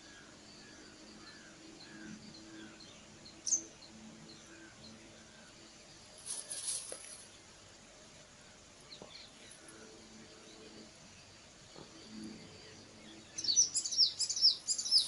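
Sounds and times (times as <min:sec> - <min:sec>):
small birds chirping: 0:00.0 - 0:15.0.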